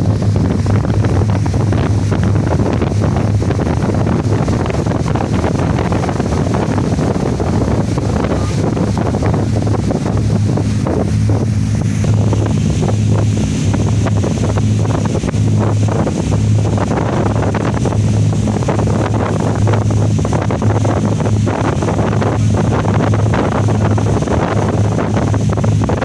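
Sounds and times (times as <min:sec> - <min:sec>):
boat engine humming: 0:00.0 - 0:26.0
wind buffeting microphone: 0:00.0 - 0:26.0.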